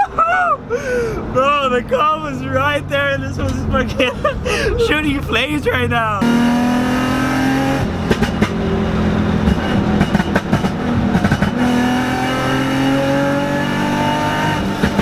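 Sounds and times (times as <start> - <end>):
car engine revving: 1.2 - 15.0
exhaust crackles and pops: 6.2 - 12.3, 14.4 - 15.0.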